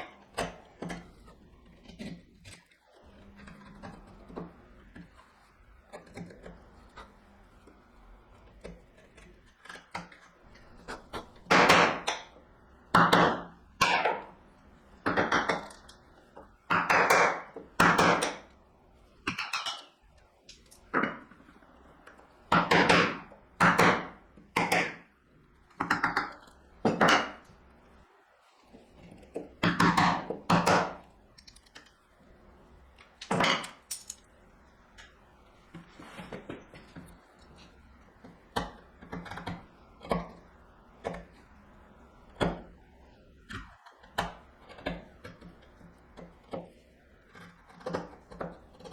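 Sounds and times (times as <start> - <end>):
chisel strikes into wood: 11.5 - 12.3, 16.7 - 18.4, 22.5 - 25.0.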